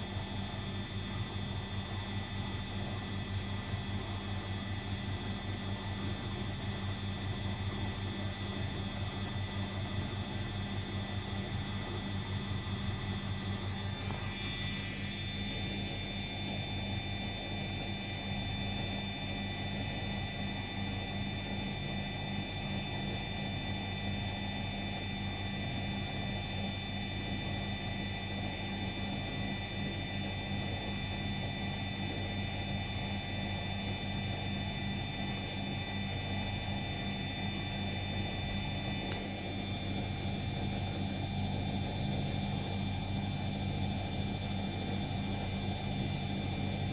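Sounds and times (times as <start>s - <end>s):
high-pitched motor whine: 13.3s - 46.9s.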